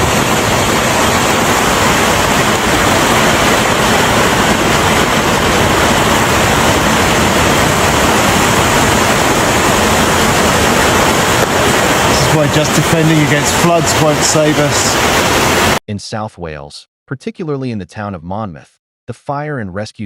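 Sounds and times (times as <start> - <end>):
floodwater rushing: 0.0 - 15.8.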